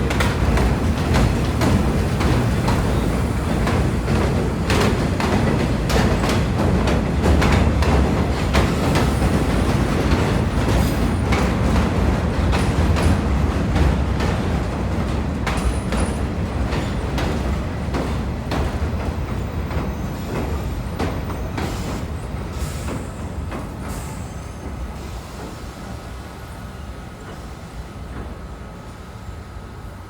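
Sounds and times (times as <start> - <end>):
wheels clacking over rail joints: 0.0 - 22.0
subway train rumbling: 0.0 - 30.0.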